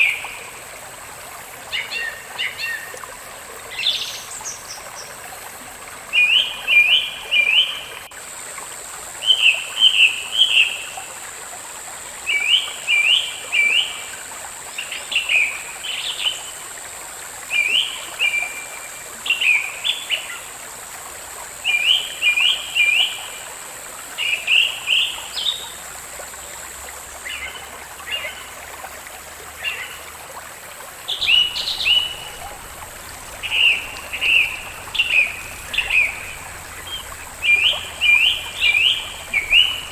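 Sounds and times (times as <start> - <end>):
water trickling: 0.0 - 39.9
songbird chirping: 31.1 - 39.9.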